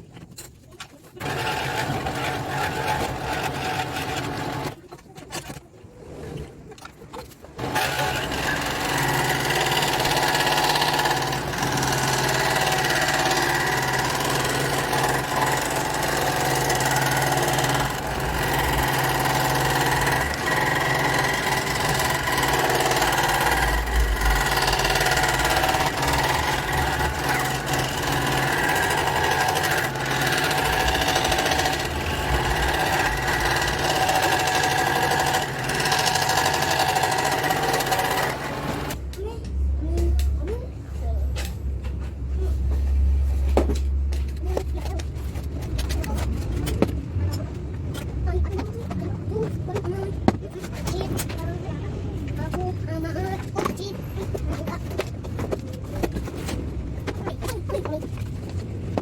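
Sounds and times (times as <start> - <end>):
scroll saw cutting pipe: 1.2 - 4.8, 7.6 - 39.0.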